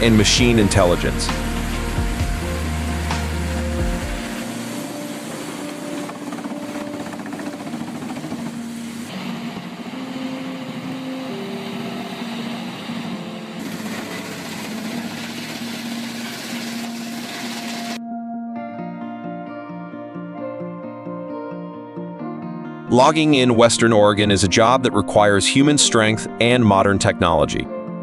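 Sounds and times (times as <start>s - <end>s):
heavy machine running: 0.0s - 18.0s
background music: 0.0s - 28.0s.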